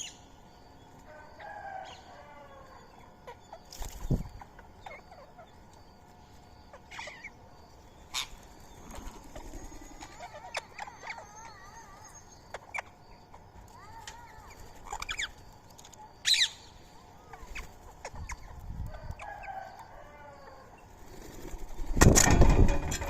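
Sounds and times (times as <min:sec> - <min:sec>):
birds chirping: 0:00.0 - 0:23.0
wings flapping: 0:03.7 - 0:04.4, 0:08.8 - 0:10.2, 0:21.0 - 0:23.0.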